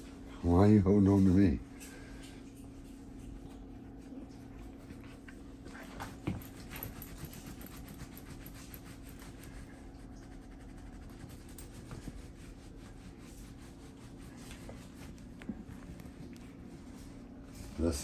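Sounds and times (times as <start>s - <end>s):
steady low hum: 0.0s - 18.0s
towel rubbing wet fur: 4.5s - 18.0s.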